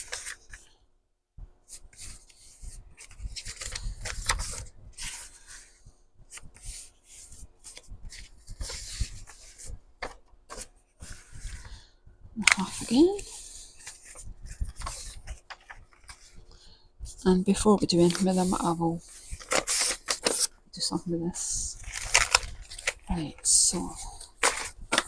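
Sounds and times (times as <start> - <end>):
paper rustling and folding: 0.0 - 0.7, 1.6 - 16.5, 17.1 - 20.6, 21.6 - 25.0.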